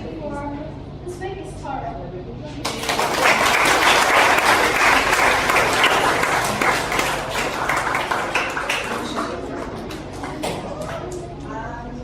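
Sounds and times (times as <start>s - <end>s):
crowd applauding: 2.7s - 11.2s.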